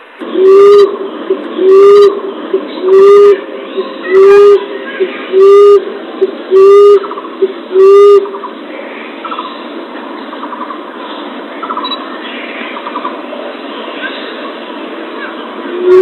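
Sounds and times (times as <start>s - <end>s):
dove cooing: 0.3s - 8.5s, 15.7s - 16.0s.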